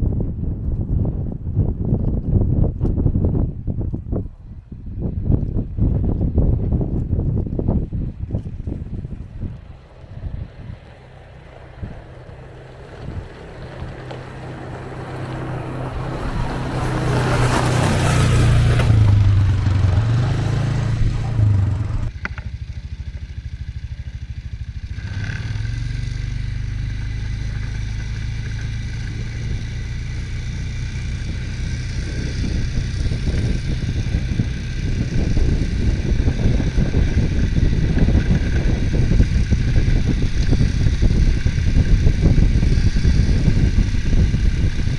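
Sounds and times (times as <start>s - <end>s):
atv engine revving: 5.4s - 44.9s
rushing noise: 11.7s - 22.1s.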